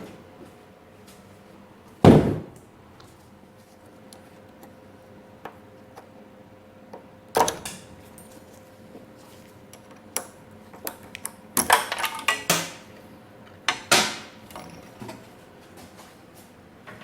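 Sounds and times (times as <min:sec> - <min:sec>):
tools clicking and tapping: 0:09.8 - 0:12.8, 0:13.7 - 0:15.2.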